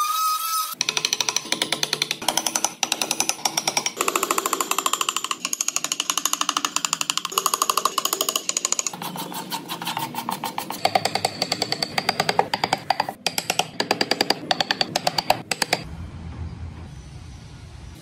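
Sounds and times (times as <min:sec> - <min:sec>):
power chisel tapping into wood: 0:00.8 - 0:09.0, 0:09.8 - 0:15.8.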